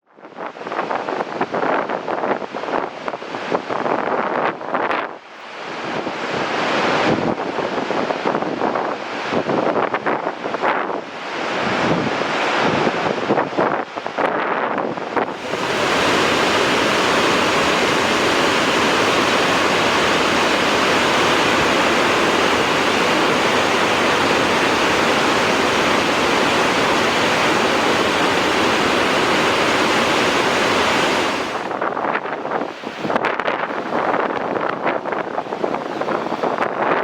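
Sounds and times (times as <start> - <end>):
wind on microphone: 0.2 - 37.0
waterfall rushing: 15.3 - 31.8.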